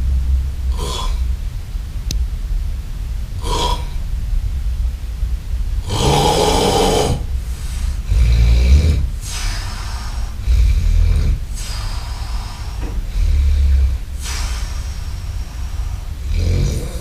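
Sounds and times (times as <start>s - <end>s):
man snoring heavily: 0.7s - 1.2s, 3.4s - 4.0s, 5.8s - 7.3s, 8.0s - 14.6s, 16.2s - 17.0s.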